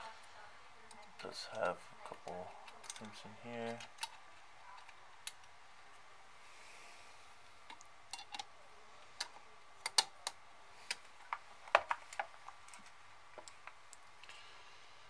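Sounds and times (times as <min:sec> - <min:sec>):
small parts clicking and tapping: 0:02.0 - 0:05.6, 0:07.7 - 0:08.5, 0:09.2 - 0:14.3.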